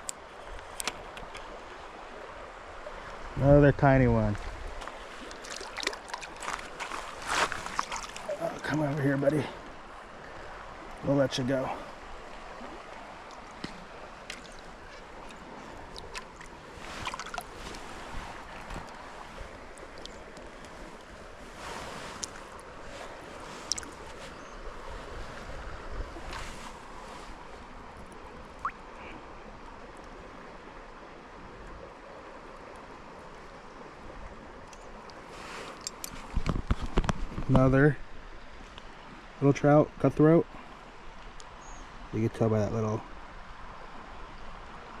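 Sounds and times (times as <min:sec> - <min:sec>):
small creek running: 0:00.0 - 0:45.0
water splashes and drips: 0:04.3 - 0:10.0, 0:11.7 - 0:24.4, 0:26.2 - 0:30.2.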